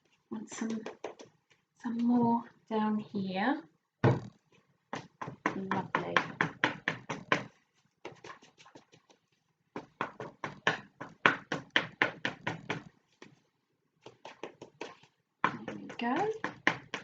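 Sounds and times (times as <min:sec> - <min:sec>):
cardboard tapping paint on paper: 0:00.6 - 0:01.6, 0:04.9 - 0:13.4, 0:14.0 - 0:17.0.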